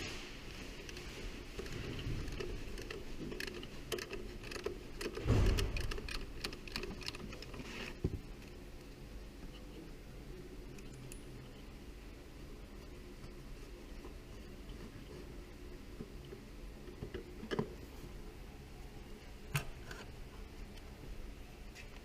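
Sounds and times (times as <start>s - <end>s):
dull thump: 5.2s - 5.9s.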